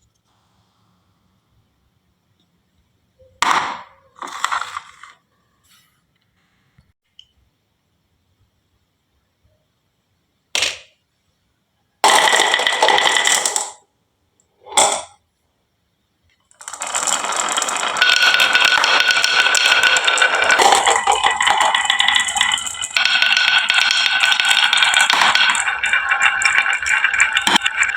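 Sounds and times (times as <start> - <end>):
marbles rattling on wooden run: 12.0 - 13.8, 16.6 - 27.9.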